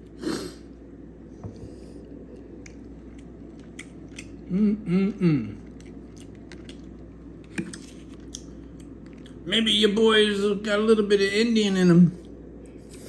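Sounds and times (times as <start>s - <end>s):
man chewing food: 1.4s - 9.4s
man humming: 4.5s - 5.6s.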